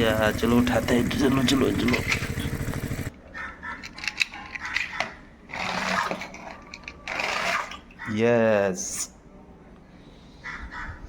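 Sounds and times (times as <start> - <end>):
small motor buzzing: 0.0 - 3.1
toys clicking and knocking: 3.6 - 7.6.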